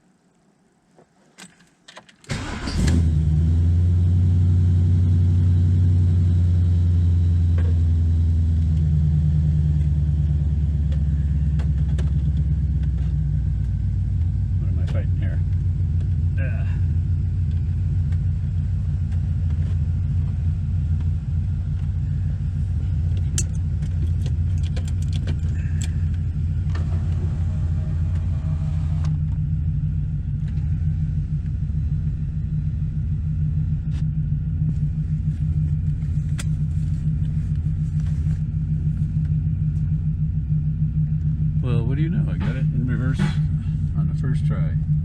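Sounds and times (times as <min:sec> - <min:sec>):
engine deep rumble: 0:02.3 - 0:45.0
light clicks and rattles: 0:23.0 - 0:26.8.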